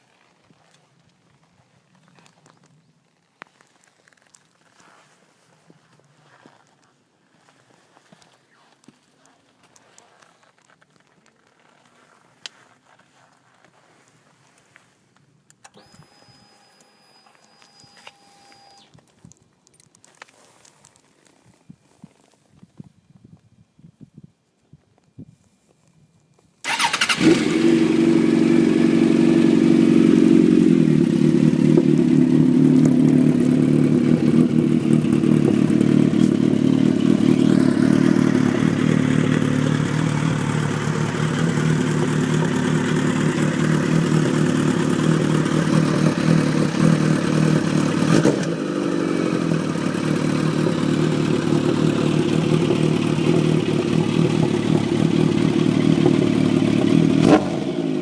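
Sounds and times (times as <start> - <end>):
motorcycle engine idling: 26.7 - 58.0.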